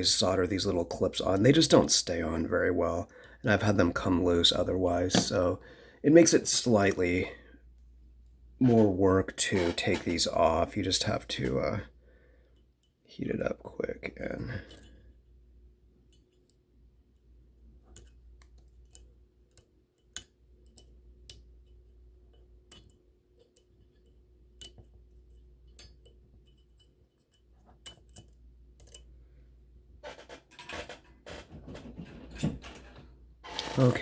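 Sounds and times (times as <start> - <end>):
handling noise: 5.1 - 5.5, 8.6 - 10.4
small tool clicks and taps: 25.7 - 29.1.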